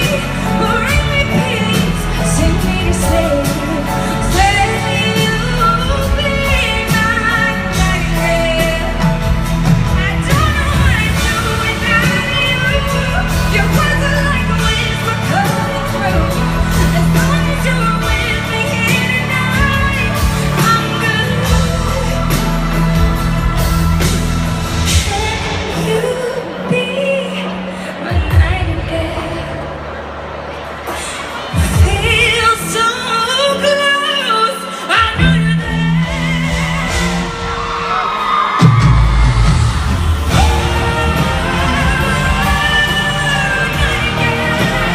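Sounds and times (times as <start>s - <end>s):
woman singing a pop ballad: 0.0s - 24.1s, 24.8s - 29.7s, 31.5s - 37.2s, 40.3s - 44.9s
band accompaniment: 0.0s - 44.9s
instrumental accompaniment: 35.1s - 44.9s.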